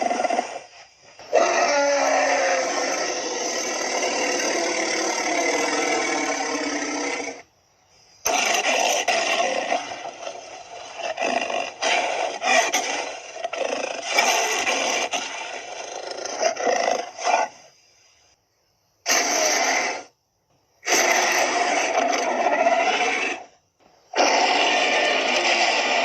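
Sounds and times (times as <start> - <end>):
dinosaur roar: 0.0 - 7.4, 20.8 - 26.0.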